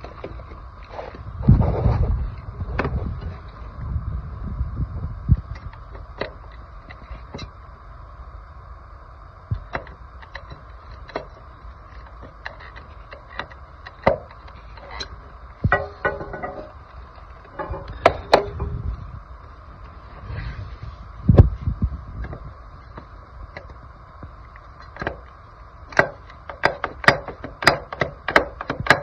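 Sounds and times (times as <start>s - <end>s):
faint steady hum: 0.0s - 29.0s
plumbing parts clicking and knocking: 9.7s - 18.8s, 25.9s - 29.0s.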